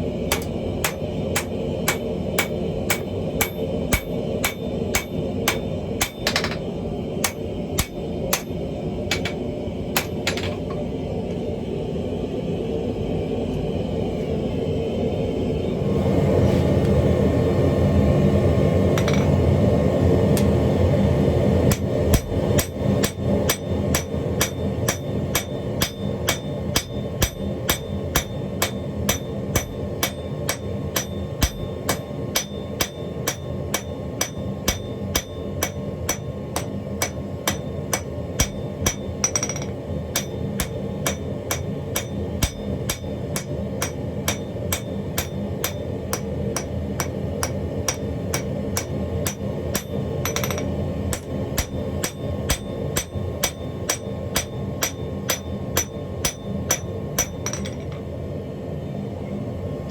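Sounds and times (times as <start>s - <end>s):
hammer blows on metal: 0.3s - 9.4s, 21.6s - 57.9s.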